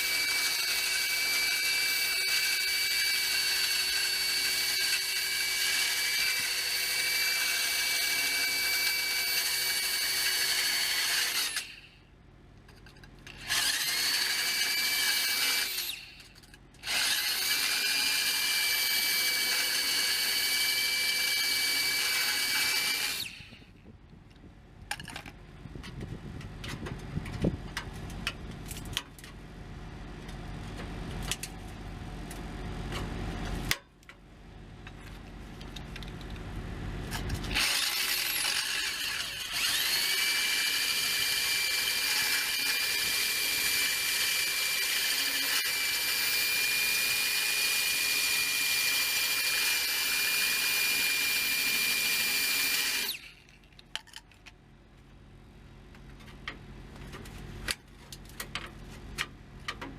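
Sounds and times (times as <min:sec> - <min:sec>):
drill cutoff wheel cutting steel: 0:00.0 - 0:12.0, 0:13.3 - 0:23.7, 0:37.4 - 0:53.7.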